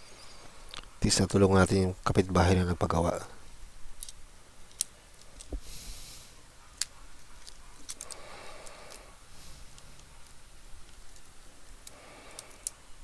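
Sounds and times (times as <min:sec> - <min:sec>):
small tools clicking and rustling: 0:03.9 - 0:05.7, 0:06.7 - 0:13.0.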